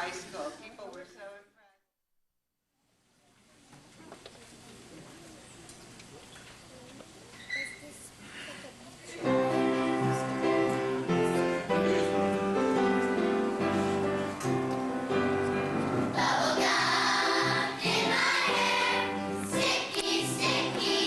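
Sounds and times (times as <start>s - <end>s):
choir singing: 16.1s - 21.0s.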